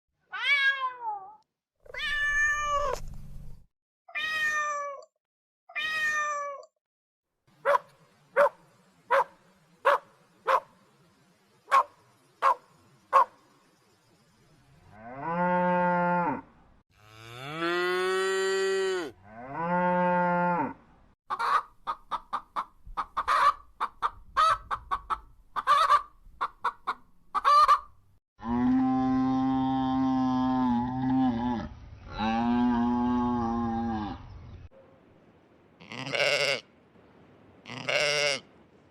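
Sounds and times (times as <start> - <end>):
cat meowing: 0.3 - 3.0, 4.1 - 5.1, 5.7 - 6.7
cow mooing: 14.9 - 20.8, 28.4 - 34.3.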